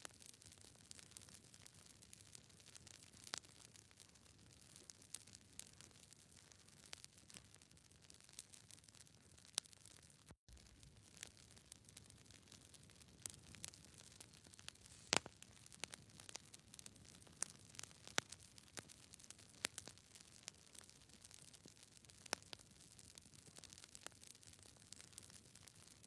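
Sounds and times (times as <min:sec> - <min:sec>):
faint clicks and crackles: 0:00.0 - 0:26.0
low hiss: 0:14.8 - 0:15.3.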